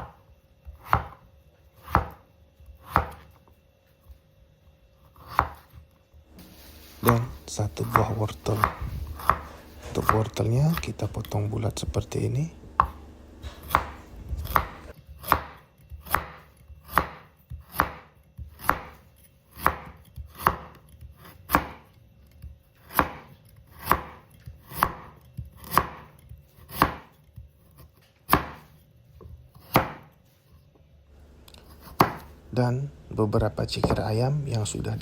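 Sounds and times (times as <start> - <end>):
knife chopping on cutting board: 0.0 - 3.4, 5.2 - 5.8, 6.4 - 22.0, 22.8 - 30.2, 31.2 - 32.5, 33.7 - 34.2.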